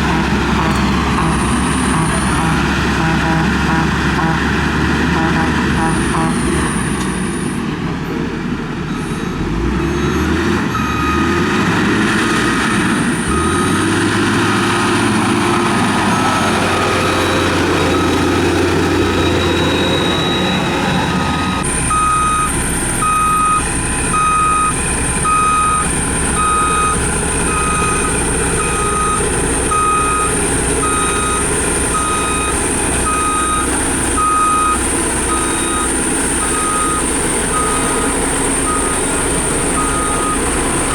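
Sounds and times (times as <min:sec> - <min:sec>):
diesel engine running: 0:00.0 - 0:40.9
reversing alarm beeps: 0:08.9 - 0:11.4, 0:13.3 - 0:40.9.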